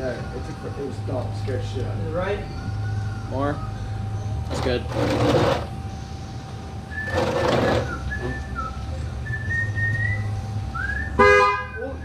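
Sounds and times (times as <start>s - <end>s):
low hum: 0.1s - 11.2s
person whistling: 6.9s - 11.2s.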